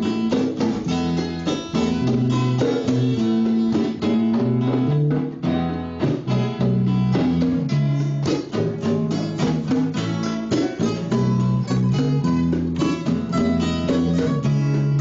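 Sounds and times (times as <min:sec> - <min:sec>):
guitar strumming and plucking: 0:00.0 - 0:15.0.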